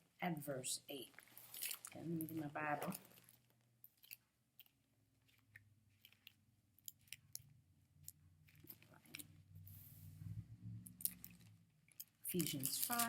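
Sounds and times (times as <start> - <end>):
book rustling: 1.0 - 7.5, 8.1 - 10.2, 11.0 - 13.0
low steady hum: 5.7 - 13.0.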